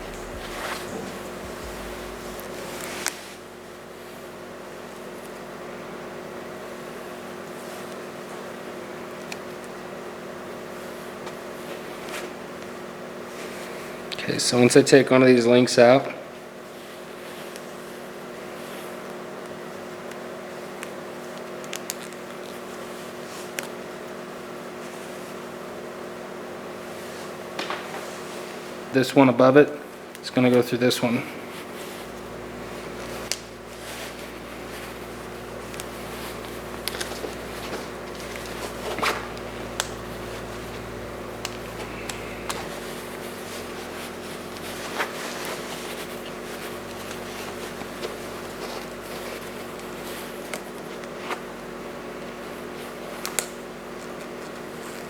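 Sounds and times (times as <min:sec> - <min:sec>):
machine hum: 0:00.0 - 0:04.0, 0:31.1 - 0:49.8.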